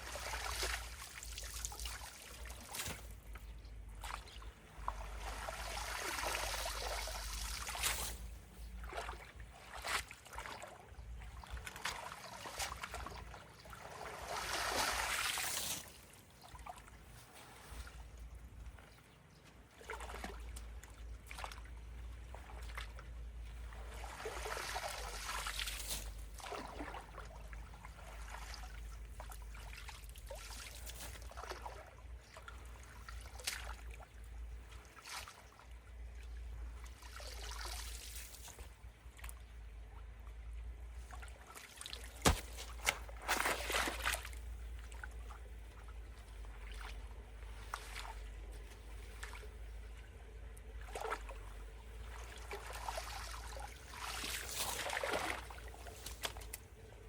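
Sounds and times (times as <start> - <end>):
water trickling and flowing: 0.0 - 57.0
water splashing: 3.9 - 17.0, 19.8 - 34.0, 41.1 - 56.7.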